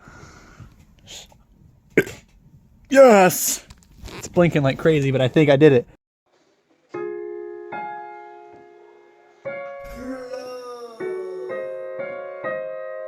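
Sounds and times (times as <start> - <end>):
slow piano-like notes: 6.8 - 13.0.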